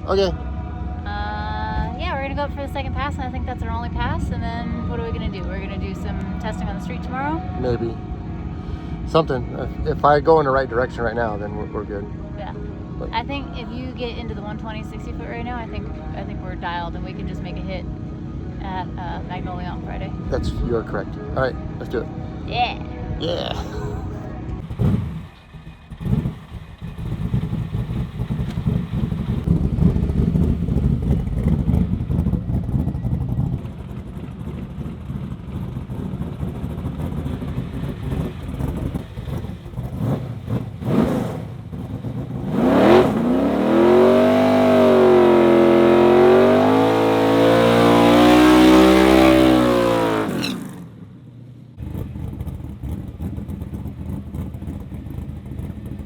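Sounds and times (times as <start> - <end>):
engine idling: 0.0 - 49.2, 51.1 - 56.0
drag car engine revving: 24.4 - 51.1, 51.8 - 56.0.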